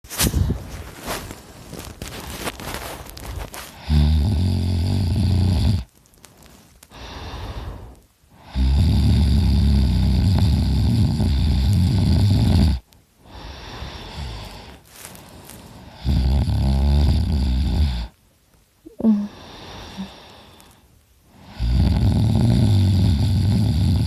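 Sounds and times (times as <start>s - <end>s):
quiet breathing: 0.3s - 24.0s
man snoring loudly: 3.8s - 5.9s, 8.4s - 14.7s, 15.9s - 18.1s, 21.4s - 24.0s.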